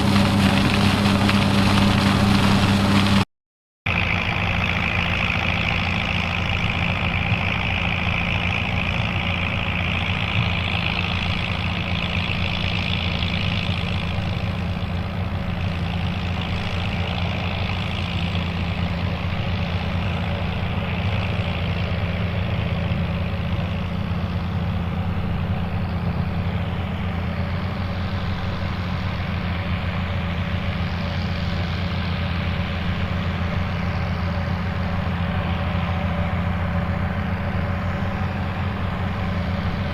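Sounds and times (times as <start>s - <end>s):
tractor diesel engine under load: 0.0s - 3.3s, 3.9s - 39.9s.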